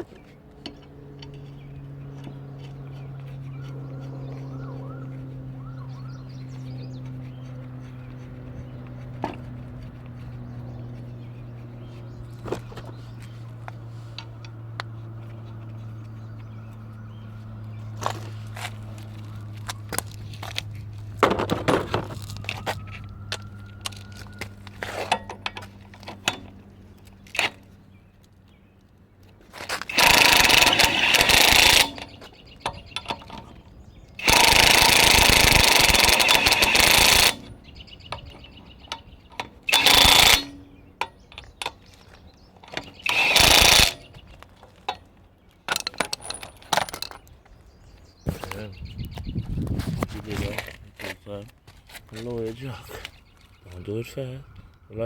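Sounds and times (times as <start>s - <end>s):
steady low hum: 0.0s - 55.0s
tools clinking: 21.5s - 26.6s, 29.7s - 33.6s, 34.2s - 47.4s
impact wrench bursts: 27.3s - 27.7s, 29.6s - 33.6s, 34.2s - 41.9s, 42.6s - 44.3s, 45.7s - 47.2s.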